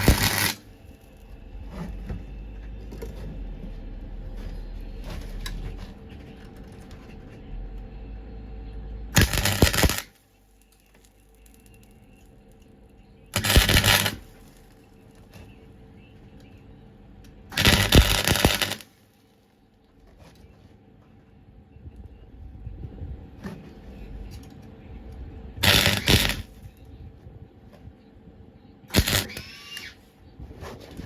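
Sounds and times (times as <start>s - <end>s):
crackling tack welds: 0.0s - 1.2s, 9.1s - 12.2s, 13.3s - 14.8s, 17.5s - 19.0s, 25.6s - 26.6s, 28.9s - 30.0s.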